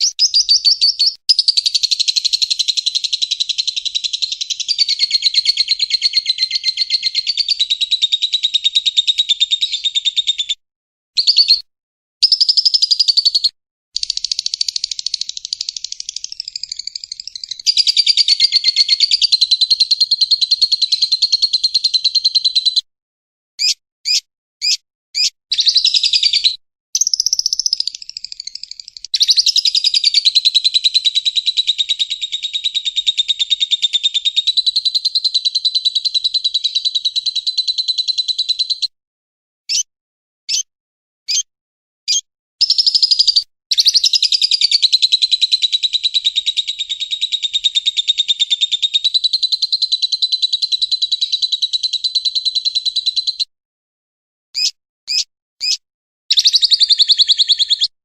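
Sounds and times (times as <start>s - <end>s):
short high bird chirps: 0.0s - 10.6s, 11.2s - 22.8s, 23.6s - 38.9s, 39.7s - 39.9s, 40.5s - 40.7s, 41.3s - 41.5s, 42.1s - 53.5s, 54.6s - 58.0s
long fast high bird trill: 12.2s - 22.6s.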